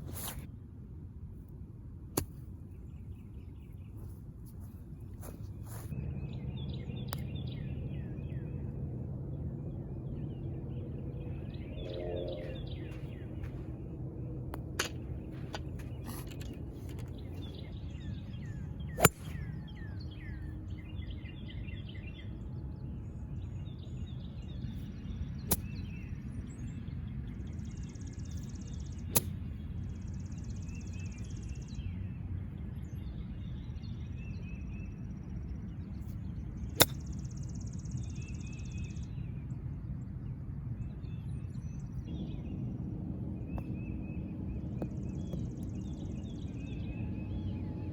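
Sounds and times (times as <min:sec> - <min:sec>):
low outdoor rumble: 0:00.0 - 0:47.9
birds chirping: 0:02.7 - 0:22.5
golf clubs striking balls: 0:14.5 - 0:17.8, 0:19.0 - 0:19.6, 0:36.8 - 0:37.0.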